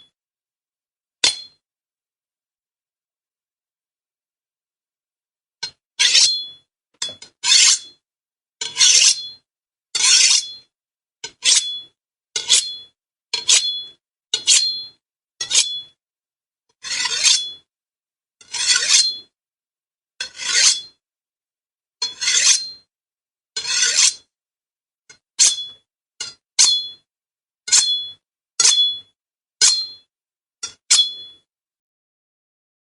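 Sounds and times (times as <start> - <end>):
steel blades scraping metal: 7.4 - 7.8, 8.7 - 9.3, 10.0 - 10.6, 15.4 - 15.8, 16.8 - 17.6, 18.5 - 19.1, 20.2 - 20.9, 22.1 - 22.8.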